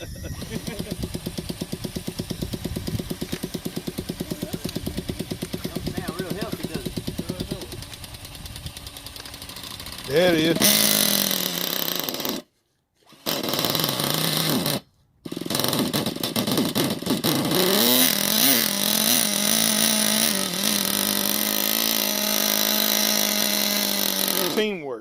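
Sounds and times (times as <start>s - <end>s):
small rc car engine buzzing: 0.0s - 24.8s
person talking: 4.2s - 7.8s, 10.1s - 10.8s, 24.4s - 25.0s.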